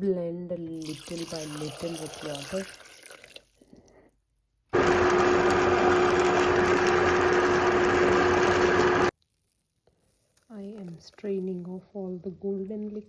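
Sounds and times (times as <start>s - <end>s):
blender whining: 4.8s - 9.1s.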